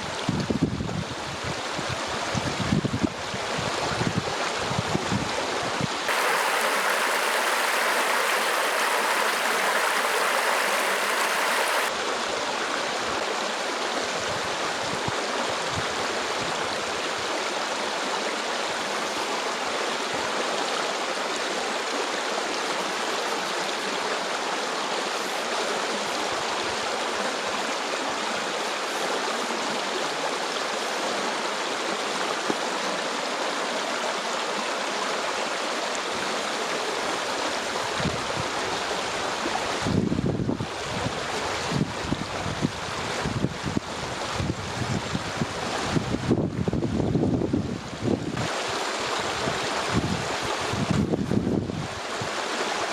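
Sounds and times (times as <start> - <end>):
stream water rushing: 6.1 - 13.0, 17.1 - 41.8, 48.4 - 50.8, 52.0 - 52.9.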